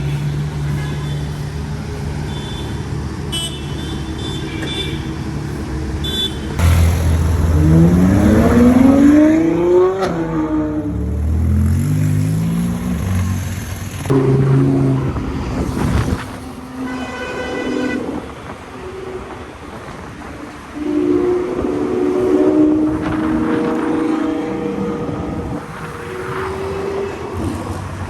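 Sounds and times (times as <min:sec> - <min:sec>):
car engine revving: 0:06.6 - 0:16.4.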